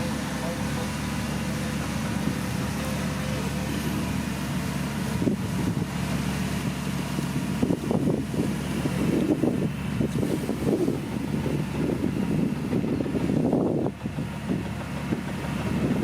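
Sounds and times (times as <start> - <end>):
bulldozer diesel engine running: 0.0 - 16.0.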